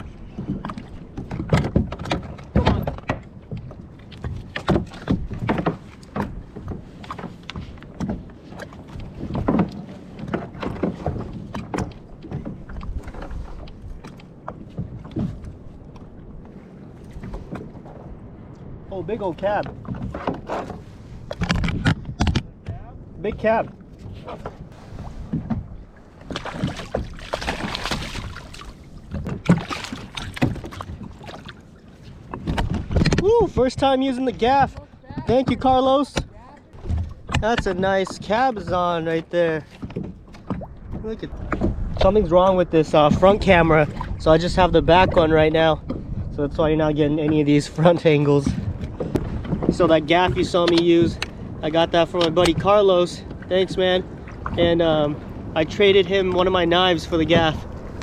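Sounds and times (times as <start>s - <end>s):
water splashing: 0.0s - 58.0s
knocks against kayak hull: 0.4s - 13.3s
knocks against a kayak: 0.4s - 16.1s, 19.6s - 24.6s, 25.2s - 28.3s, 32.3s - 38.9s.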